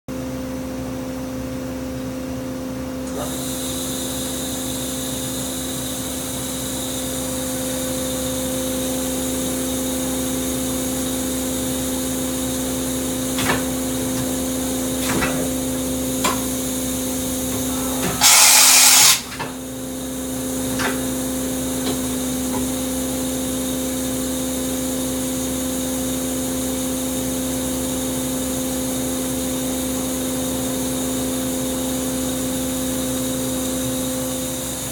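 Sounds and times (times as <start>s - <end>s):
machine humming: 10.1s - 23.7s
machine hissing: 11.7s - 22.4s.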